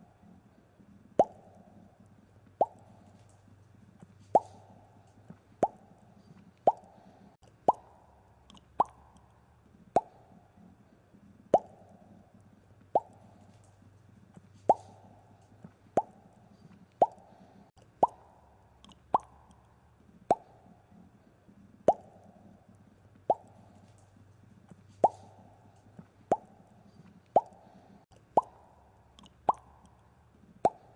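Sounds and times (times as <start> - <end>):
bubbles popping: 8.6 - 9.1.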